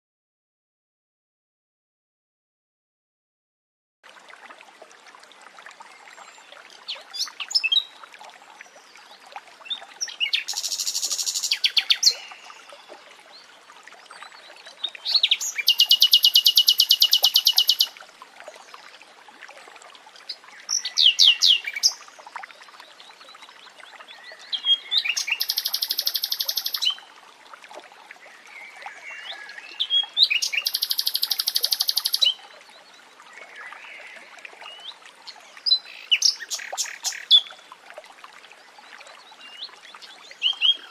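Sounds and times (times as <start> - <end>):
running water: 4.0 - 40.9
nightingale singing: 15.1 - 17.9, 24.6 - 27.0, 29.8 - 32.3.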